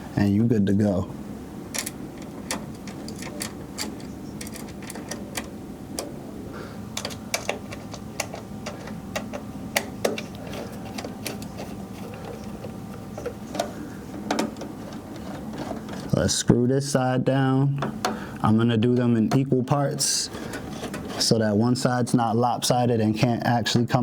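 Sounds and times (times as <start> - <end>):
steady hum: 0.0 - 24.0
metal parts clicking and tapping: 1.7 - 6.1, 7.0 - 16.2.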